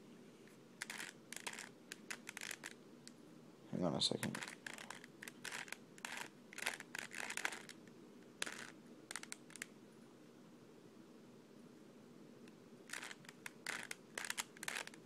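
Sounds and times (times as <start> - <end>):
puzzle cube turning clicks: 0.8 - 2.8, 4.2 - 7.8, 8.4 - 9.7, 12.9 - 15.0.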